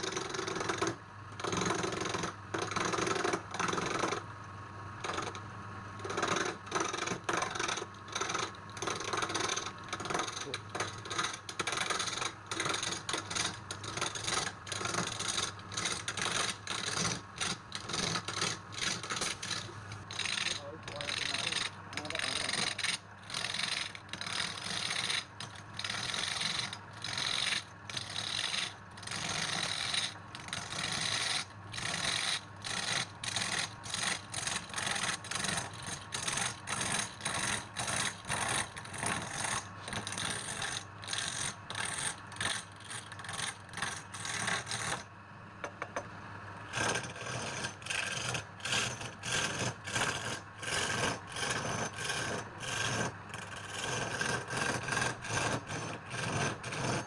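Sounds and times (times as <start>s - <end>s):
turning tool scraping wood: 0.0s - 4.2s, 5.0s - 5.4s, 6.0s - 45.1s, 46.7s - 57.0s
lathe humming: 7.0s - 44.9s.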